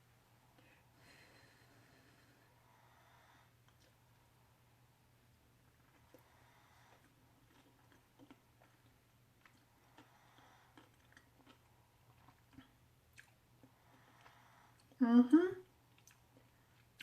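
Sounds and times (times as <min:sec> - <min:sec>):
low steady hum: 0:00.0 - 0:17.0
chewing crunchy food: 0:05.7 - 0:15.0, 0:15.6 - 0:17.0.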